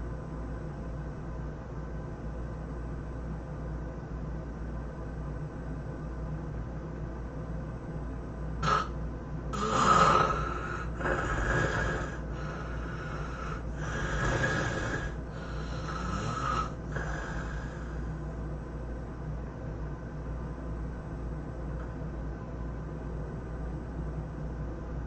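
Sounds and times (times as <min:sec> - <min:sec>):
steady low hum: 0:00.0 - 0:25.0
snort: 0:08.6 - 0:18.0
person snoring heavily: 0:08.6 - 0:18.1.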